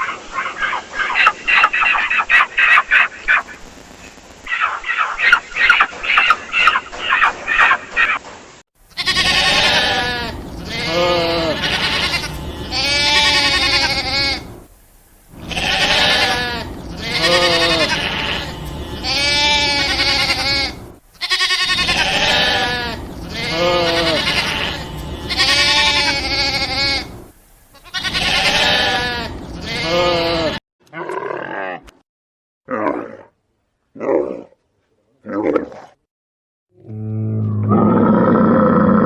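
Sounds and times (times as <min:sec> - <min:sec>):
goats bleating: 0:09.0 - 0:14.6, 0:15.3 - 0:27.2, 0:27.8 - 0:30.6.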